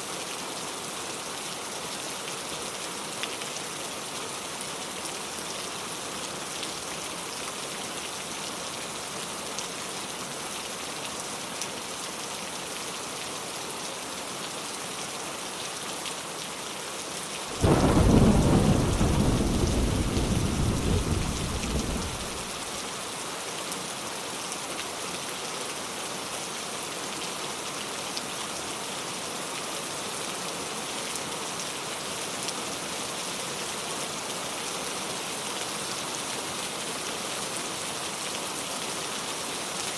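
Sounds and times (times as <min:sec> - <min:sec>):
steady rain: 0:00.0 - 0:39.9
thunder clap and rumble: 0:17.5 - 0:22.7.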